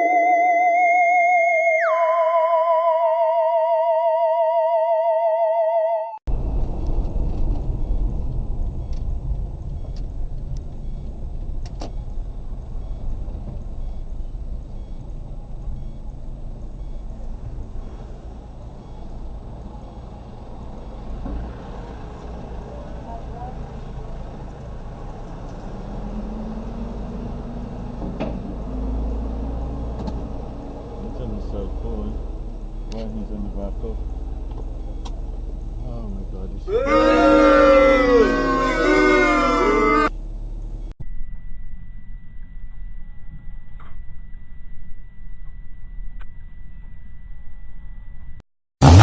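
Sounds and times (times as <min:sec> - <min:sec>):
car engine and road rumble: 0:06.3 - 0:41.0, 0:45.9 - 0:49.0.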